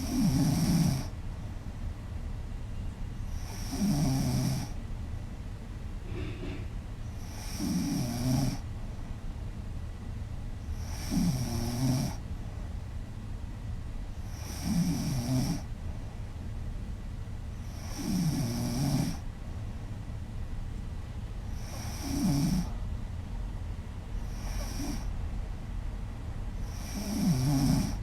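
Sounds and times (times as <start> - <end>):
woman snoring loudly: 0.0 - 1.1, 3.4 - 4.8, 7.2 - 8.6, 10.8 - 12.2, 14.3 - 15.6, 17.8 - 19.2, 21.6 - 22.7, 24.3 - 25.1, 26.6 - 28.0.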